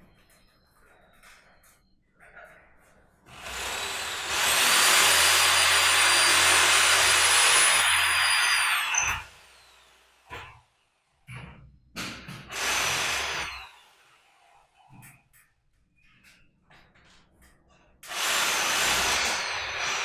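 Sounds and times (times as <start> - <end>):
power tool motor whining: 3.3 - 10.0, 12.5 - 14.0.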